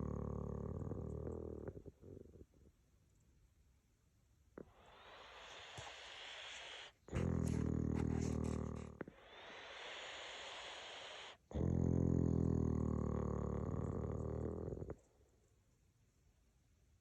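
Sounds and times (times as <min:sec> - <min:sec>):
pet snoring: 0:00.0 - 0:02.5, 0:04.6 - 0:15.1.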